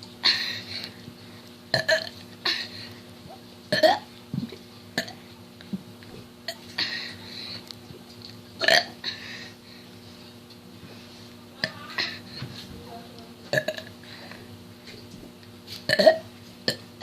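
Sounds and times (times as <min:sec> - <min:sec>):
girl burping: 0:01.7 - 0:02.7, 0:03.7 - 0:04.0, 0:08.6 - 0:09.1, 0:13.5 - 0:13.9.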